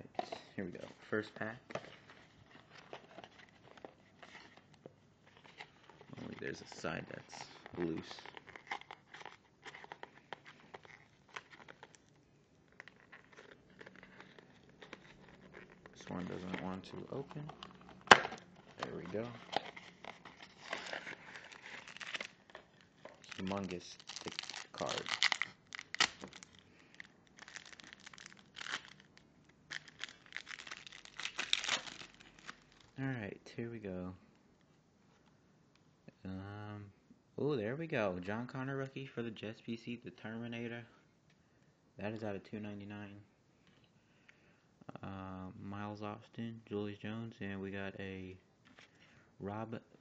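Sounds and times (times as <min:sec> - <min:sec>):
wrapper crinkling and clicks: 0:12.7 - 0:33.0.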